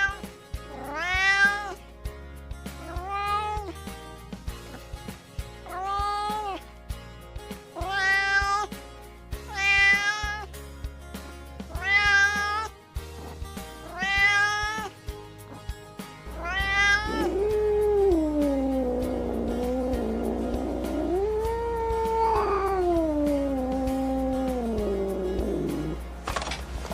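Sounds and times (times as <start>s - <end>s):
cat meowing: 0.0s - 1.8s, 2.8s - 3.7s, 5.7s - 6.6s, 7.8s - 8.7s, 9.5s - 10.5s, 11.7s - 12.7s, 13.8s - 14.9s, 16.3s - 26.0s
cat yowling: 0.0s - 1.8s, 2.9s - 3.7s, 5.7s - 6.6s, 7.8s - 8.7s, 9.5s - 10.5s, 11.7s - 12.7s, 13.9s - 14.9s, 16.4s - 26.0s
background music: 0.0s - 26.9s.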